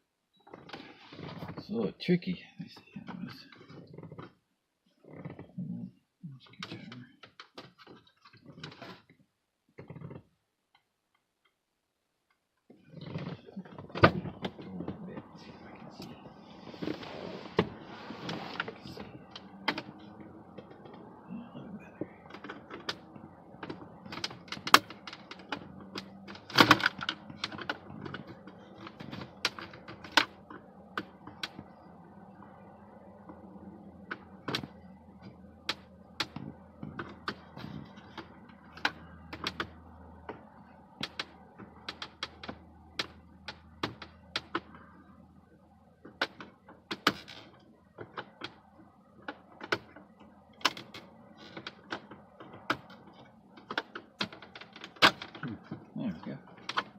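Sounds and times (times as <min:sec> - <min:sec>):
plastic trim clicking and knocking: 0:22.2 - 0:31.7.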